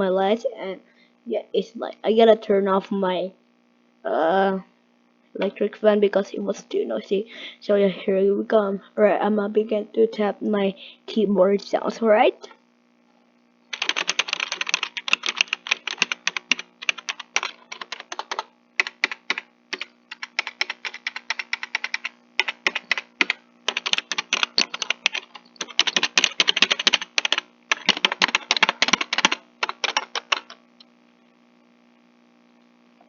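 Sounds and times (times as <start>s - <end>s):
keyboard keys clicking: 13.7s - 30.6s.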